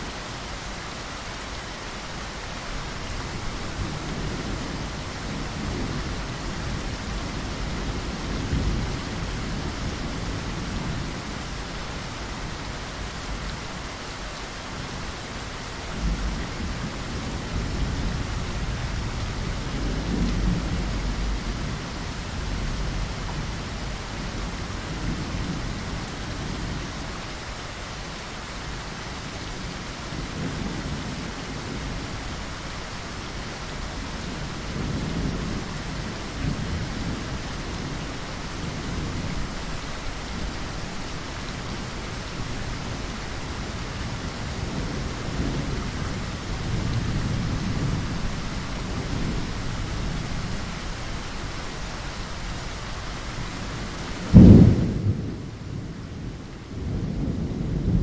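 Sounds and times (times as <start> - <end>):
heavy rain: 0.0 - 58.0
thunder rumbling: 53.3 - 58.0.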